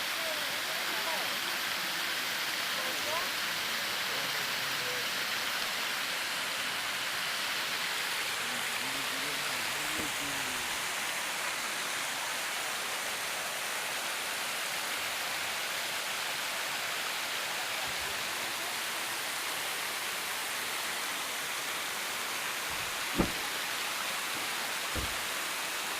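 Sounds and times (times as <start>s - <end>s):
waterfall rushing: 0.0s - 25.9s
short low thump: 22.7s - 23.5s, 25.0s - 25.2s.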